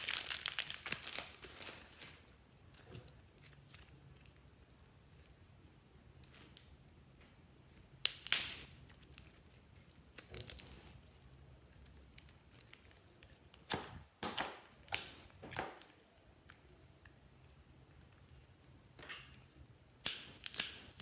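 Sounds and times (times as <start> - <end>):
slime crackling: 0.0 - 2.3.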